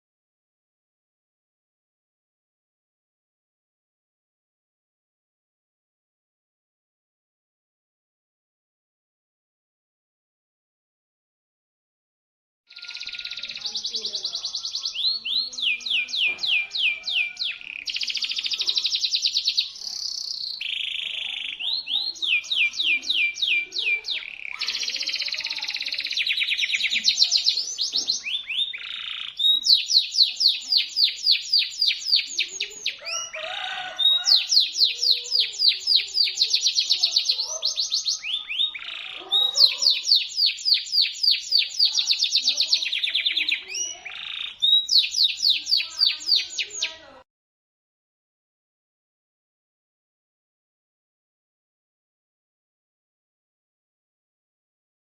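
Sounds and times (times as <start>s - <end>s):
canary singing trills: 12.7s - 47.2s.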